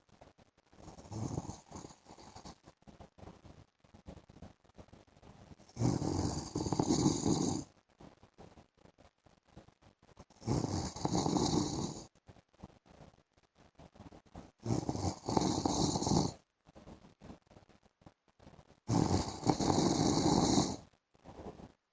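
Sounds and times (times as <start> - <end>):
quiet breaths: 0.0 - 21.8
man snoring: 0.9 - 2.5, 5.7 - 7.6, 10.4 - 12.0, 14.7 - 16.3, 18.9 - 20.8.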